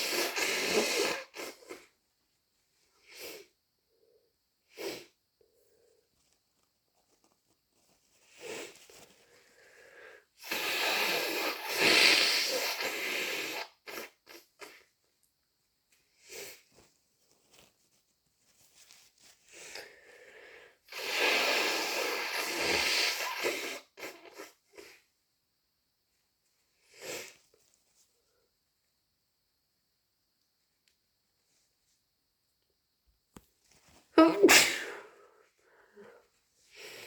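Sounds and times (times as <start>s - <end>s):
sniffs and snuffles: 0.0s - 1.9s, 4.7s - 14.9s, 16.1s - 25.1s, 26.8s - 28.1s
wet nose blowing: 0.0s - 1.9s, 3.1s - 3.5s, 4.7s - 5.1s, 8.4s - 9.0s, 9.9s - 14.8s, 16.2s - 16.6s, 19.5s - 25.0s, 26.9s - 27.4s, 34.2s - 35.2s.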